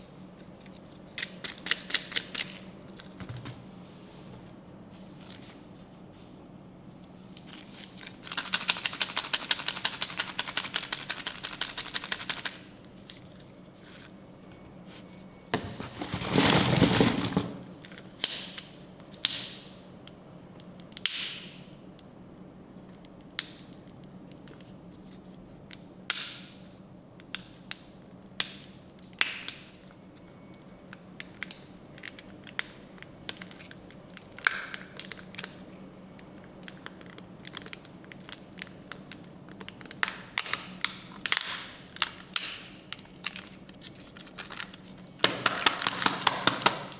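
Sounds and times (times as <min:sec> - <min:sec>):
packaging rustling: 0:07.4 - 0:18.1, 0:32.0 - 0:46.9
rattling clicks of packaging: 0:31.2 - 0:35.6, 0:36.2 - 0:46.9.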